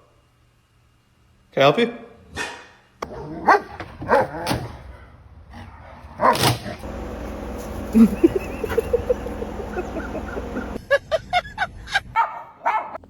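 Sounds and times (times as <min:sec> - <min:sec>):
dog barking: 0:02.4 - 0:04.4, 0:12.2 - 0:13.0.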